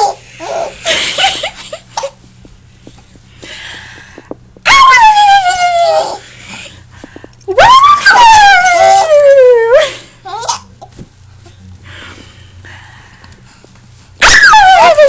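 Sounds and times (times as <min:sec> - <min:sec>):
dog howling whine: 0:04.7 - 0:06.2, 0:07.6 - 0:09.8, 0:14.2 - 0:15.0.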